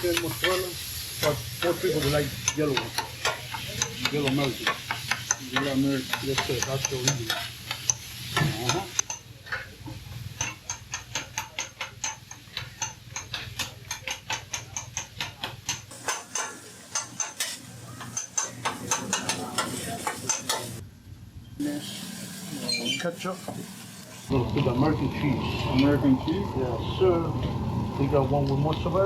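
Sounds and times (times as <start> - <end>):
metal spatulas clanking on griddle: 0.0 - 20.8.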